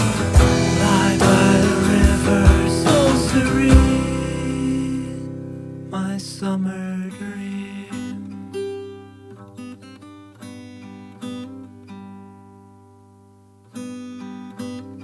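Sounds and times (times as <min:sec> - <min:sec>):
acoustic guitar strumming chords: 0:00.0 - 0:13.2.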